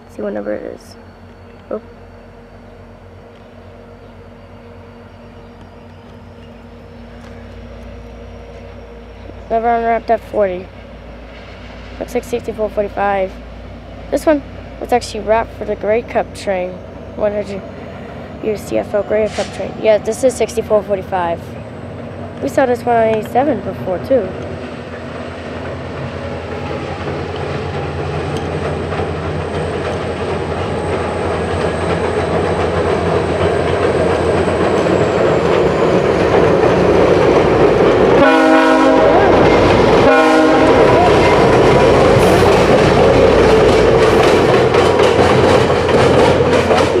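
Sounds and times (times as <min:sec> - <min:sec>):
diesel train engine and wheels: 0:00.0 - 0:47.0
train cars clacking over rail joints: 0:18.4 - 0:47.0
train horn blasts: 0:38.2 - 0:41.6.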